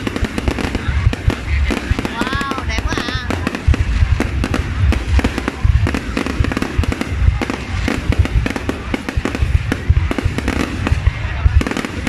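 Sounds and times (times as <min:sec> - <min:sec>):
fireworks cracking and booming: 0:00.0 - 0:12.0.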